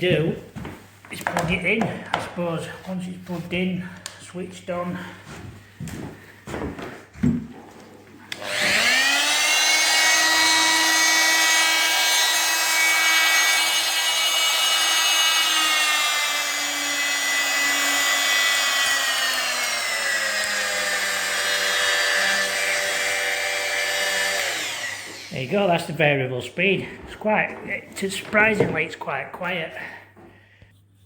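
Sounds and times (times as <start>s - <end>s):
power tool motor whining: 8.4s - 25.4s.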